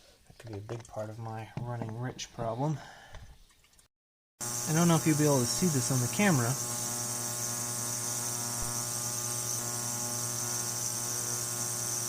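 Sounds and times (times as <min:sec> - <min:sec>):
ultrasonic cleaner humming and hissing: 0:04.4 - 0:12.0.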